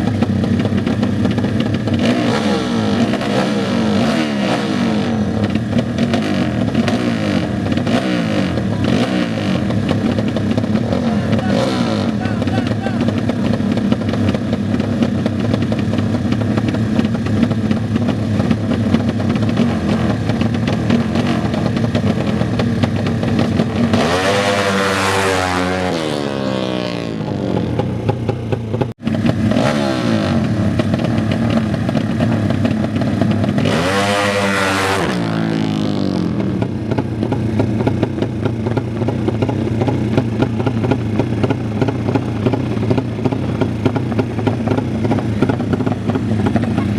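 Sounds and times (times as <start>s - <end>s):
motorcycle engines revving: 0.0s - 46.9s
motorcycle racing past: 23.5s - 27.8s, 33.6s - 37.0s.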